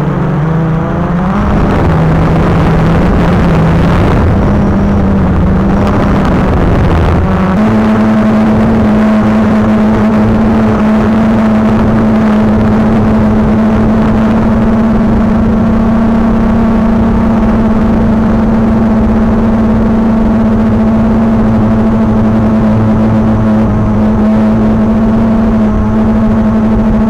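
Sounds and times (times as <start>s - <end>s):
rushing air noise: 0.0s - 18.5s
drone propellers humming: 0.0s - 27.0s.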